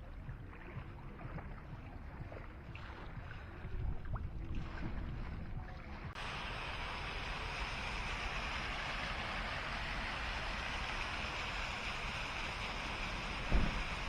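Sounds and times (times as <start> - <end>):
steady rushing noise: 6.1 - 14.0
dull low thump: 13.4 - 14.0.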